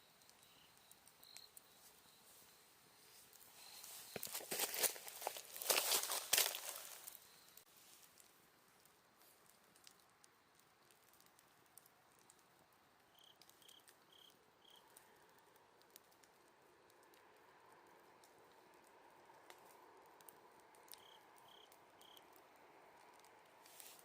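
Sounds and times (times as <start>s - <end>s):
insect chirping: 0.0s - 11.3s, 12.1s - 14.9s, 20.9s - 22.4s
campfire crackling: 0.0s - 24.0s.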